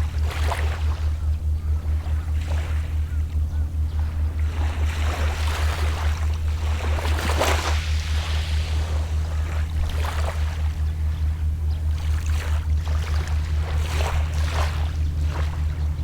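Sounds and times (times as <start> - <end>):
distant boat engine drone: 0.0 - 16.0
small waves lapping on shore: 4.4 - 10.8.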